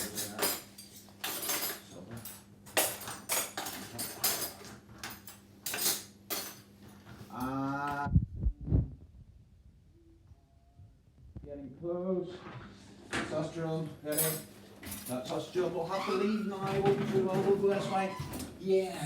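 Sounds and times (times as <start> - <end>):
dishes and cutlery clattering: 0.0 - 7.3, 14.1 - 18.5.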